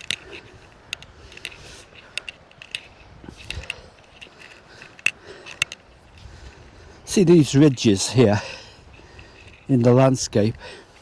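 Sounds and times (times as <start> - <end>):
light clicks and taps: 0.0 - 6.8
faint steady hiss: 0.0 - 11.0.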